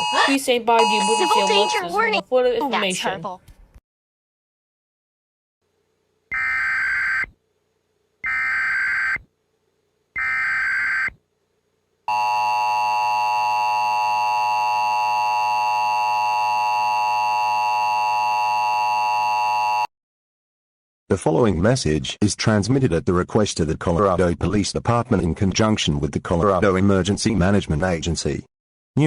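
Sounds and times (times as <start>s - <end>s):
two-tone attention signal: 0.0s - 1.8s
screeching digital data tones: 10.2s - 11.2s.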